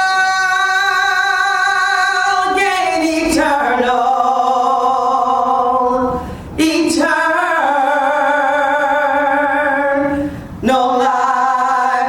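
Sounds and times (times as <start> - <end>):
woman singing a hymn: 0.0 - 12.0
woman breathing in: 6.1 - 6.6, 10.1 - 10.6.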